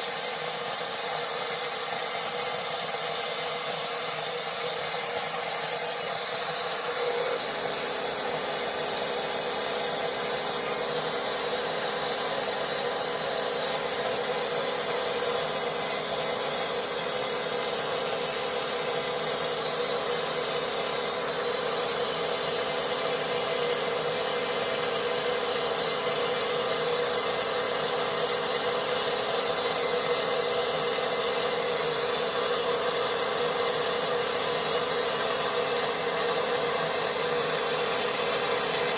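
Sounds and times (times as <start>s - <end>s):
steady hum: 0.0s - 20.0s
vapor blasting jet hissing: 0.0s - 38.9s.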